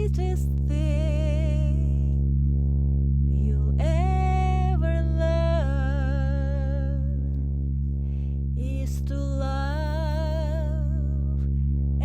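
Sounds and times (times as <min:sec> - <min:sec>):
woman singing with vibrato: 0:00.0 - 0:02.2, 0:03.3 - 0:07.3, 0:08.6 - 0:11.4
steady low drone: 0:00.0 - 0:12.0.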